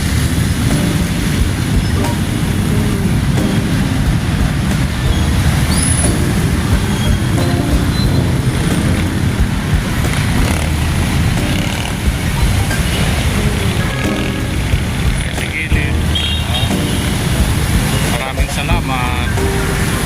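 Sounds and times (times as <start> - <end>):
vehicle engine and tyre rumble: 0.0 - 20.0.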